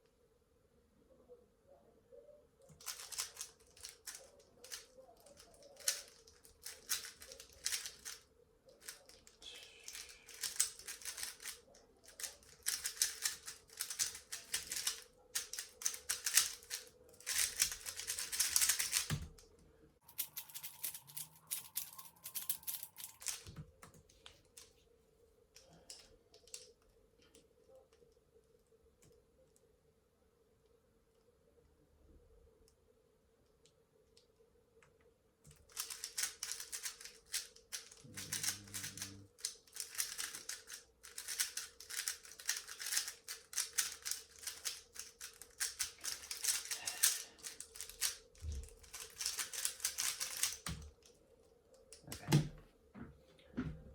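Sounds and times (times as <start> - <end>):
puzzle cube plastic clicking: 2.7 - 8.2, 8.8 - 19.4, 35.5 - 51.0.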